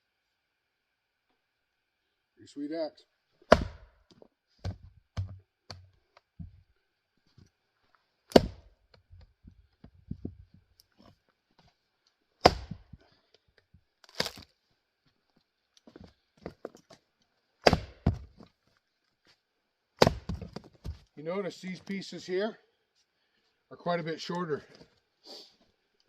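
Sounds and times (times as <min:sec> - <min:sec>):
axe chopping wood: 0:03.5 - 0:04.0, 0:04.6 - 0:06.6, 0:08.3 - 0:08.7, 0:12.4 - 0:13.0, 0:14.1 - 0:14.4, 0:17.6 - 0:18.4, 0:20.0 - 0:21.1
wood knocking: 0:04.6 - 0:05.8.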